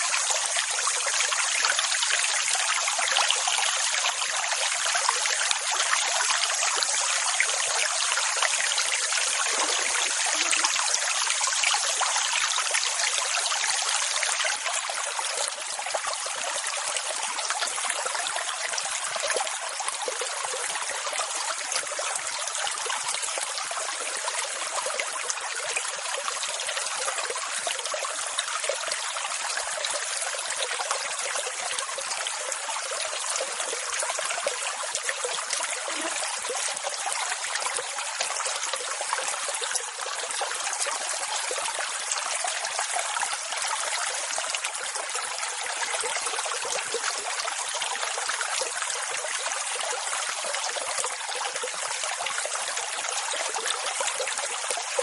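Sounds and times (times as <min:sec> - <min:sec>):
rushing water: 0:00.0 - 0:55.0.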